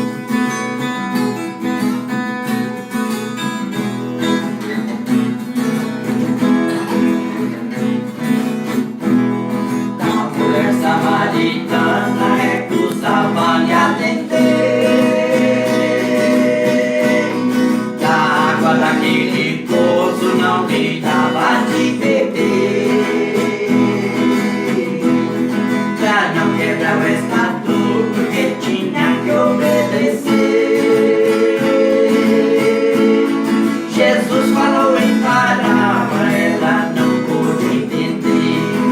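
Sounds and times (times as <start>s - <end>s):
acoustic guitar strumming: 0.0s - 38.9s
person singing worship song: 10.0s - 38.9s.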